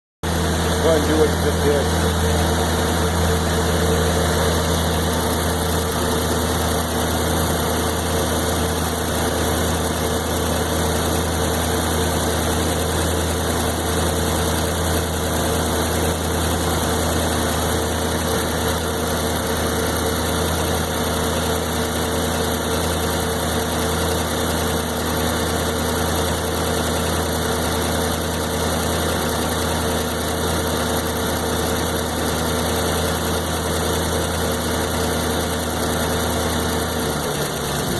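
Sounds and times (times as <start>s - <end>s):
car engine idling rough: 0.2s - 37.9s.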